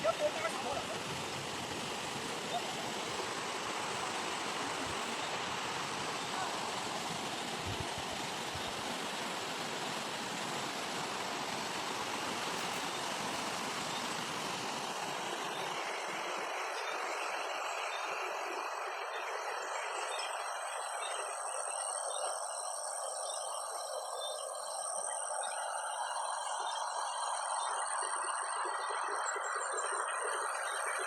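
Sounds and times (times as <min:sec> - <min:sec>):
fast-flowing river water: 0:00.0 - 0:16.5.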